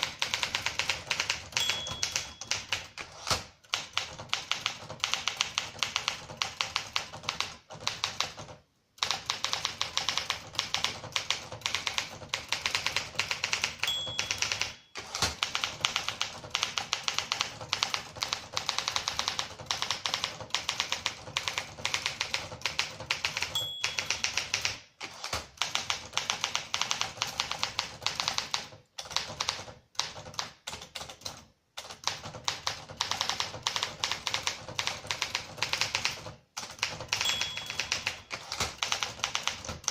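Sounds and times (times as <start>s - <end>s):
typewriter typing: 0.0s - 39.9s
typewriter margin bell ring: 1.2s - 3.2s, 13.6s - 15.5s, 23.3s - 24.8s, 37.1s - 39.4s.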